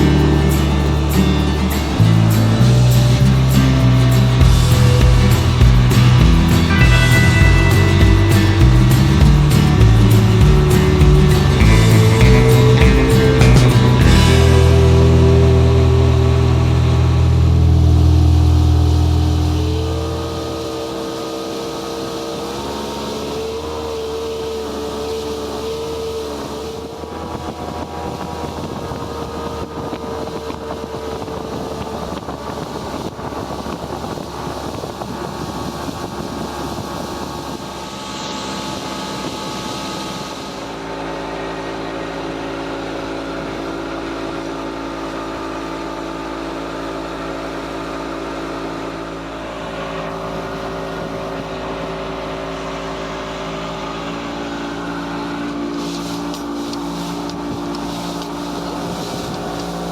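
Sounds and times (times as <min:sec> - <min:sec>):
motorboat engine running: 0:00.0 - 0:59.9.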